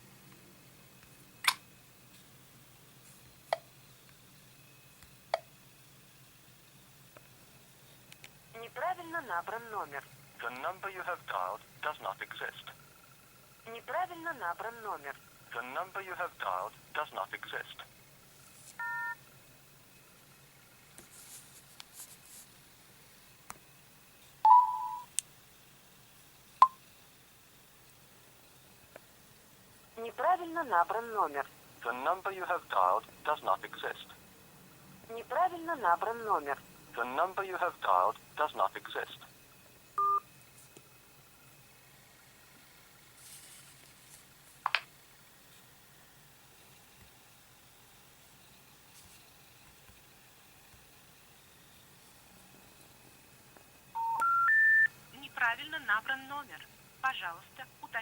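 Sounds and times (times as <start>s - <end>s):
faint background hiss: 0.0s - 58.0s
sharp clicks: 1.4s - 1.6s
electronic beep from phone: 18.8s - 19.2s, 24.5s - 25.1s, 40.0s - 40.3s, 54.0s - 54.9s.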